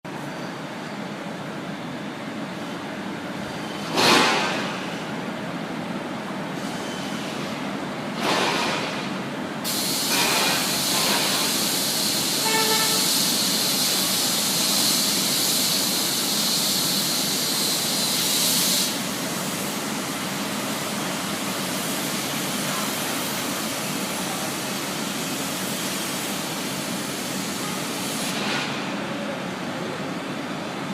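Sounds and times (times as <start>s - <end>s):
loud hiss: 8.2s - 28.8s.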